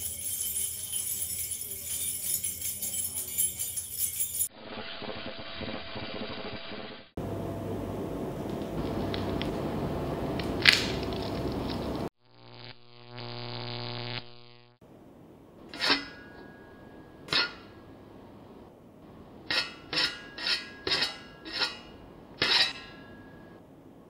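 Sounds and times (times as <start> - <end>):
metal striking metal clinks: 0.0 - 4.5, 15.7 - 17.8
buzzing hum: 4.7 - 14.8.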